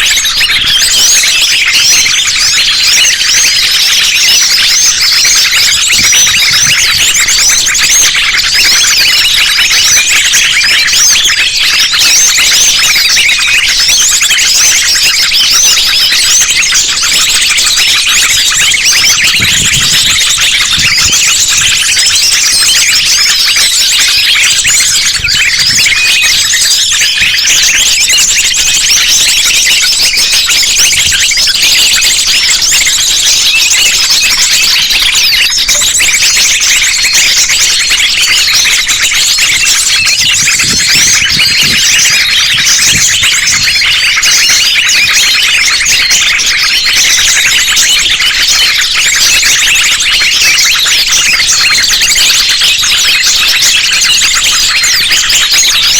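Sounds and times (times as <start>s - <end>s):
small birds chirping and trilling: 0.0s - 55.9s.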